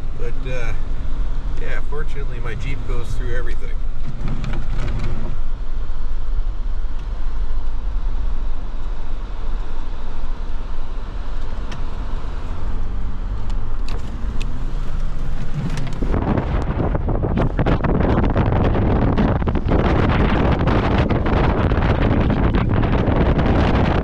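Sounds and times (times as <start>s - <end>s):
engine and tyre rumble: 0.0s - 24.0s
wind on microphone: 14.0s - 24.0s.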